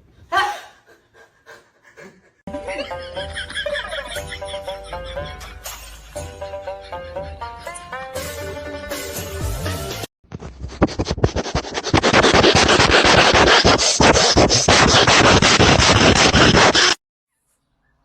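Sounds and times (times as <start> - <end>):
rapid scratching and rubbing: 10.3 - 17.0.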